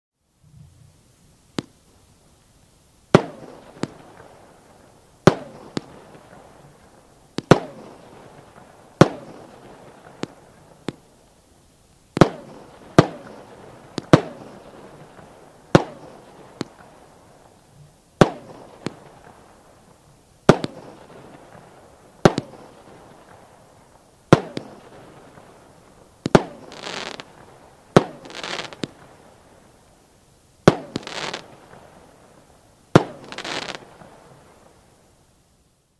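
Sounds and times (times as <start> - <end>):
firework hissing crackle: 0.4 - 35.8
firework bangs with echo: 3.1 - 4.3, 5.2 - 6.7, 7.4 - 11.0, 12.2 - 17.0, 18.2 - 19.5, 20.5 - 23.5, 24.3 - 29.2, 30.6 - 32.0, 32.9 - 34.3.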